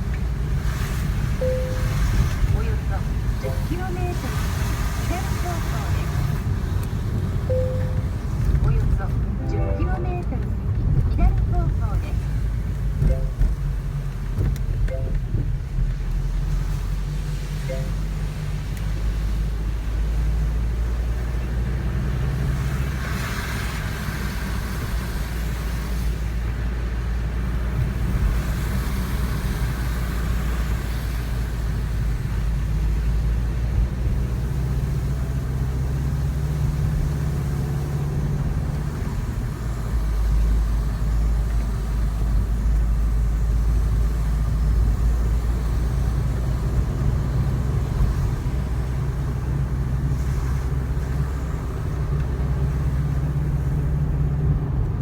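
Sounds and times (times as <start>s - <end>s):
low engine drone: 0.0s - 14.1s, 14.8s - 15.9s, 17.1s - 20.1s
road noise: 0.0s - 55.0s.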